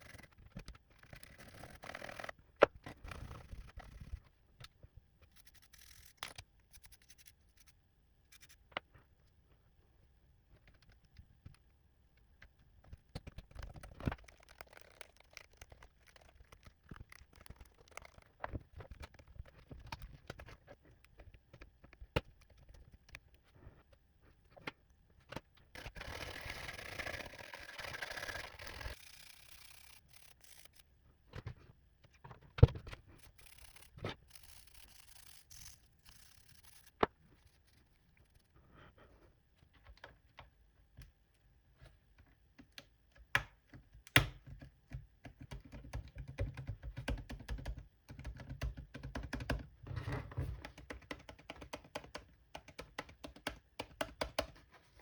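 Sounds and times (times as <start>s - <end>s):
scratchy brushing: 25.8s - 30.8s, 33.2s - 38.4s
keyboard clicks and taps: 42.6s - 49.7s, 50.5s - 54.6s.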